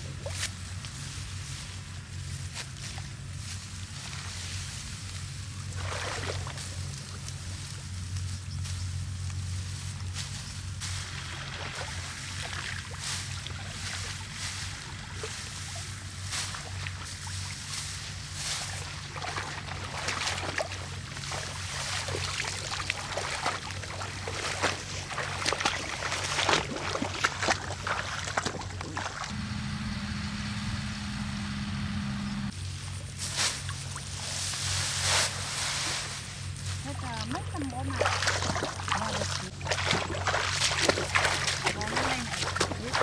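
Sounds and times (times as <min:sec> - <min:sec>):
small engine running: 0:23.5 - 0:35.6.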